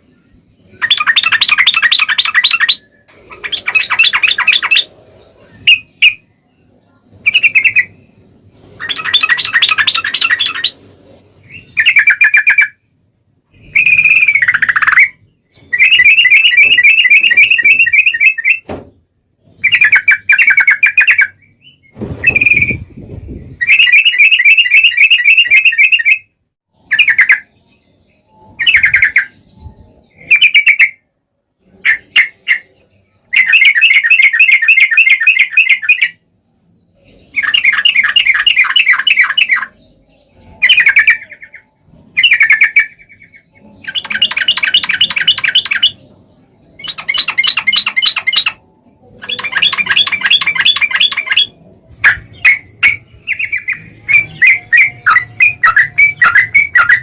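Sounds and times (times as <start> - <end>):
bulbuls singing bubbling chatter: 37.3 - 57.0.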